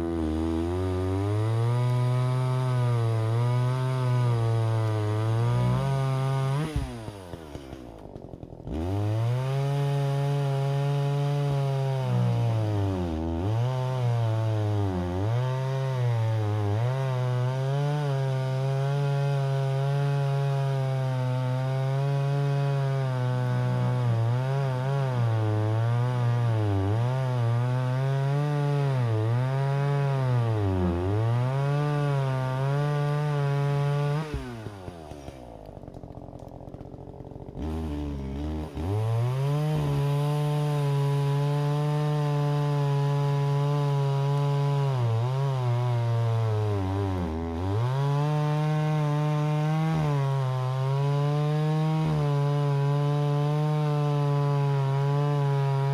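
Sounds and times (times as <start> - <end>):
chainsaw cutting wood: 0.0 - 55.9.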